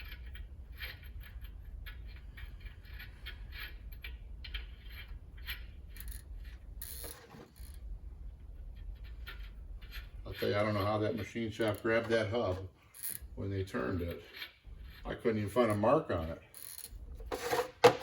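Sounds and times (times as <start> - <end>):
ratchet wrench clicking: 0.0 - 7.8, 12.9 - 13.3, 16.5 - 17.0
ratchet rasp: 0.0 - 17.7.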